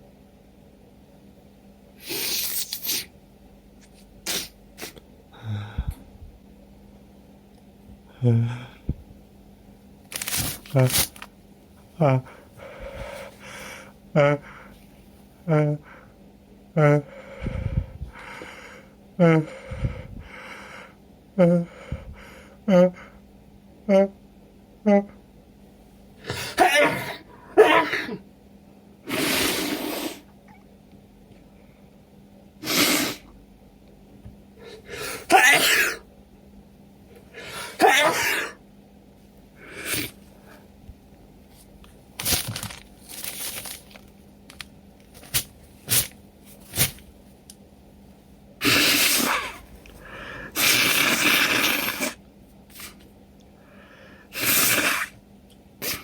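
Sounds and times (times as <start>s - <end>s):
person sniffing: 2.0s - 3.1s, 4.2s - 5.0s, 29.1s - 30.3s, 32.6s - 33.3s, 39.6s - 40.6s, 48.6s - 53.0s, 54.3s - 55.2s
person sneezing: 4.2s - 5.0s, 26.2s - 28.2s, 32.6s - 33.3s, 34.6s - 36.0s, 37.4s - 38.6s, 39.6s - 40.2s, 48.6s - 49.7s, 50.5s - 53.0s, 54.3s - 55.2s, 55.8s - 56.0s.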